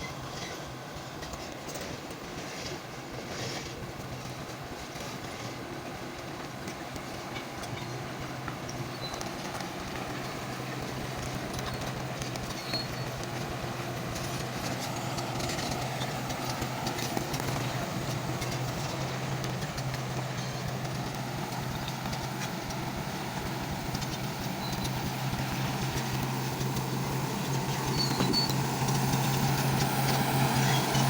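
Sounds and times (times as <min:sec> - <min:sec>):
bulldozer diesel engine droning: 0:00.0 - 0:31.0.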